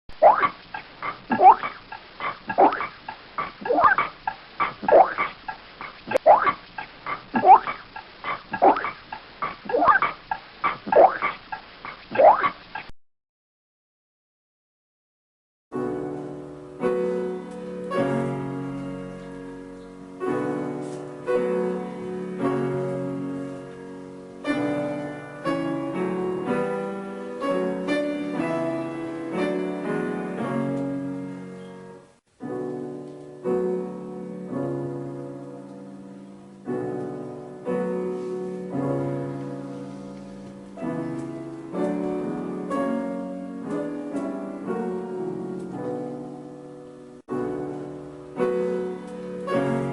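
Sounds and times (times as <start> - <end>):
slow piano chords: 15.8 - 49.9.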